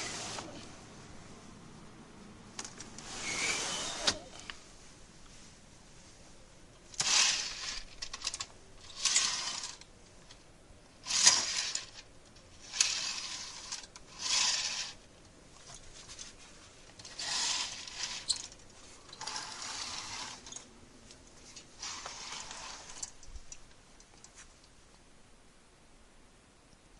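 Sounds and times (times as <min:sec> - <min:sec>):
window sliding scrapes: 0:00.0 - 0:00.7, 0:03.0 - 0:04.4, 0:08.9 - 0:09.8, 0:12.6 - 0:15.0, 0:17.0 - 0:18.5, 0:19.2 - 0:20.7, 0:21.7 - 0:23.2.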